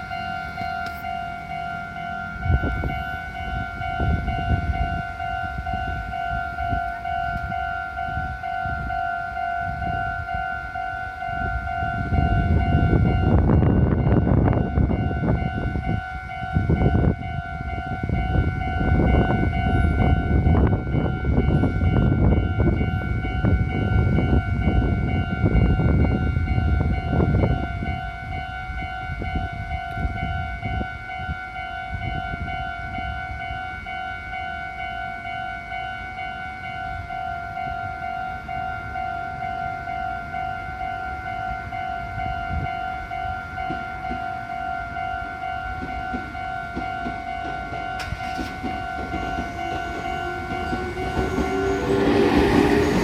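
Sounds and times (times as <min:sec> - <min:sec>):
train wheels rumbling and clacking: 0:00.0 - 0:09.2, 0:42.2 - 0:53.0
level-crossing alarm bell ringing: 0:00.0 - 0:53.0.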